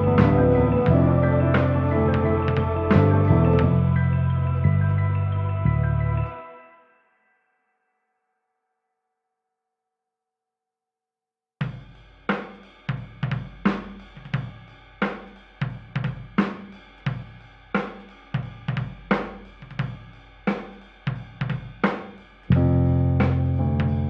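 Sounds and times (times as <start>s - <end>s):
band music: 0.0s - 6.3s, 22.5s - 24.0s
drum beat: 0.1s - 3.2s, 11.6s - 24.0s.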